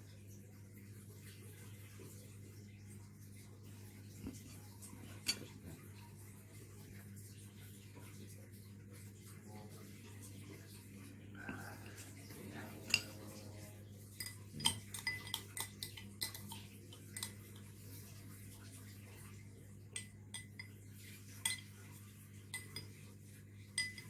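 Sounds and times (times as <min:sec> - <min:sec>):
cutlery clinking on dishes: 0:04.3 - 0:05.8, 0:12.5 - 0:17.8, 0:19.9 - 0:21.9, 0:22.5 - 0:23.1, 0:23.7 - 0:24.0.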